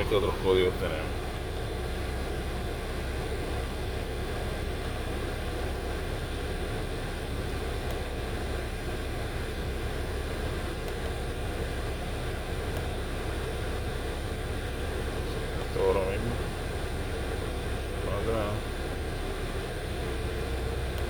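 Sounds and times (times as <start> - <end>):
car engine idling: 0.0 - 21.0
constant hum: 0.0 - 21.0.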